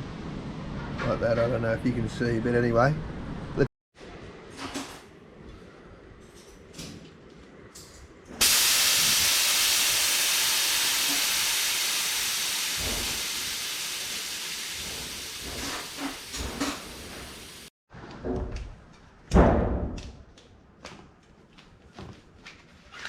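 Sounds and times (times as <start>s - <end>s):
air hissing out of tyre: 8.4s - 17.7s.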